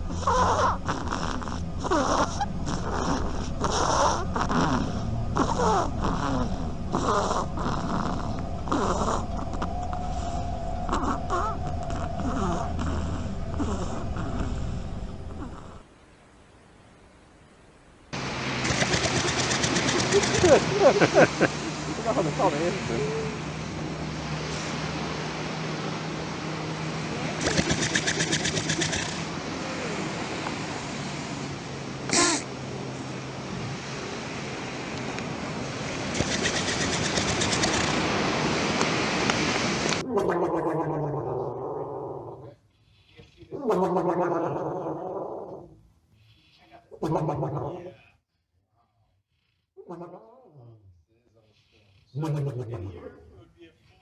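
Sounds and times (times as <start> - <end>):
animal snoring: 0.0 - 15.9, 27.4 - 29.2, 36.2 - 38.0, 40.0 - 48.0
steady low hum: 0.0 - 36.2.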